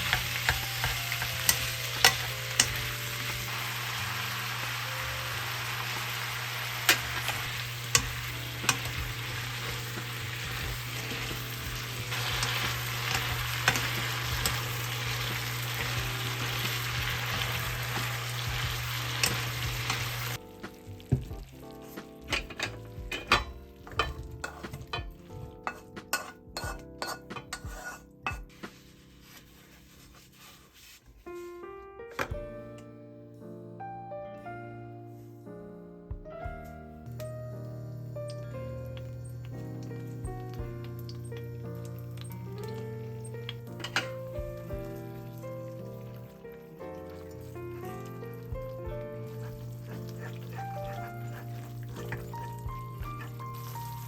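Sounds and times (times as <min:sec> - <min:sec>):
utensils tapping and clinking: 0:00.0 - 0:03.5, 0:06.8 - 0:17.2, 0:18.7 - 0:20.4, 0:22.1 - 0:28.6, 0:42.2 - 0:44.4, 0:49.4 - 0:54.0
spatula scraping pan: 0:00.0 - 0:04.8, 0:06.0 - 0:20.4, 0:21.7 - 0:31.1, 0:49.2 - 0:54.0
oil sizzling in pan: 0:00.0 - 0:31.0, 0:37.1 - 0:54.0.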